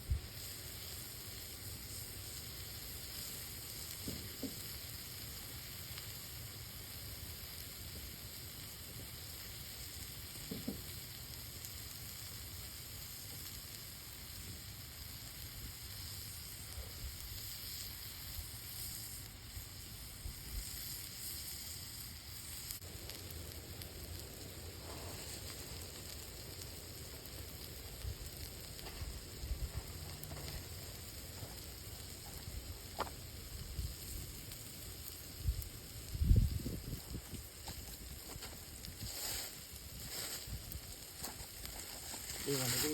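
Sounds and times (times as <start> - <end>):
burger sizzling in frying pan: 0.0 - 42.9.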